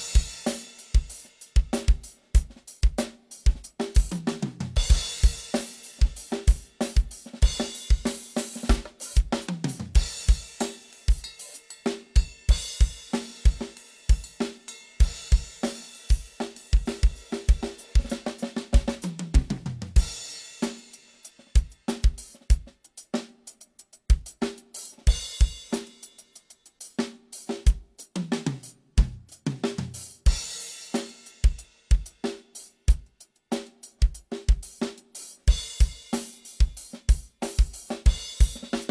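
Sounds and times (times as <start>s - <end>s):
hi-hat and cymbal crashes: 0.0s - 18.2s, 20.0s - 38.9s
bass drum and snare beat: 0.0s - 38.9s.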